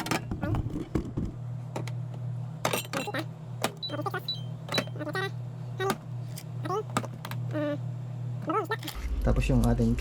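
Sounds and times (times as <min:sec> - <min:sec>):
steady low hum: 0:00.0 - 0:10.0
jars knocking and clinking: 0:02.6 - 0:03.9.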